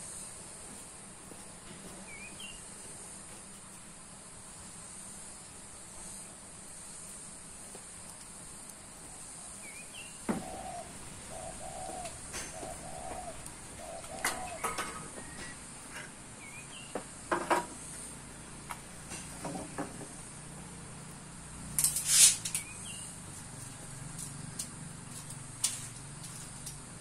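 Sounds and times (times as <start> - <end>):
steady high-pitched hiss: 0.0 - 27.0
birds chirping: 1.8 - 2.8, 9.1 - 17.3, 22.5 - 24.0
lower bird calls: 1.9 - 2.7, 9.3 - 17.3, 22.0 - 23.8.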